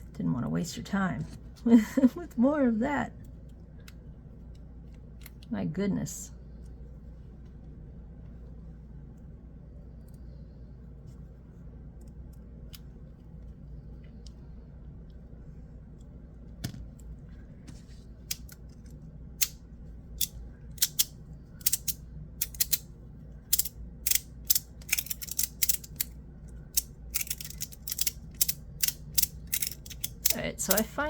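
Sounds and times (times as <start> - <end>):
magnetic fidget slider clicking: 20.2 - 22.8, 23.5 - 31.0.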